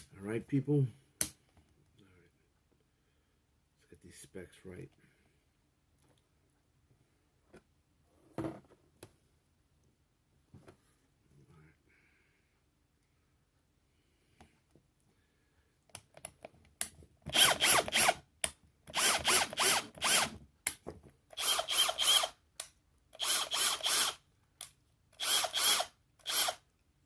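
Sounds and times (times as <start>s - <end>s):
hammer drill motor whirring: 17.3s - 18.2s, 18.9s - 20.4s, 21.3s - 22.4s, 23.2s - 24.2s, 25.1s - 26.7s.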